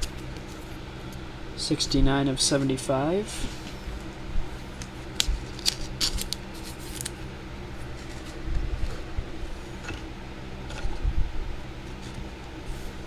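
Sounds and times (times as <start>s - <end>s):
steady low hum: 0.0s - 13.0s
trading cards clicking and snipping: 4.8s - 7.2s.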